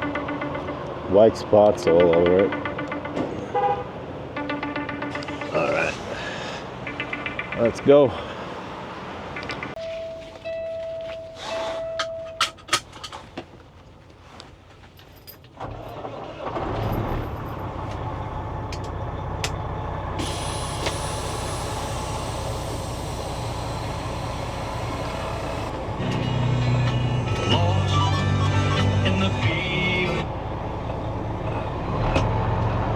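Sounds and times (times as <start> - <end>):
diesel truck engine: 0.0 - 7.6, 15.4 - 32.9.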